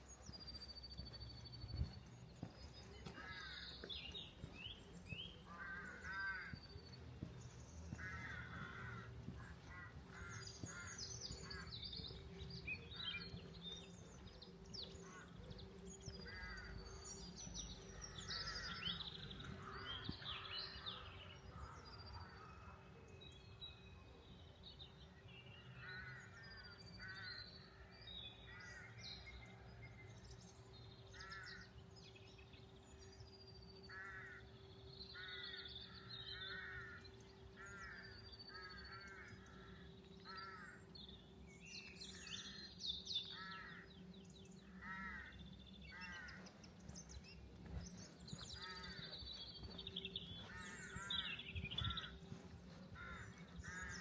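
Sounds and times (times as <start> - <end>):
small birds chirping: 0.0 - 22.3, 35.2 - 54.0
crows cawing: 2.4 - 4.5, 5.4 - 12.2, 15.0 - 17.0, 18.0 - 22.8, 25.8 - 27.4, 31.2 - 31.7, 33.9 - 34.5, 35.1 - 40.8, 43.3 - 44.1, 44.7 - 54.0.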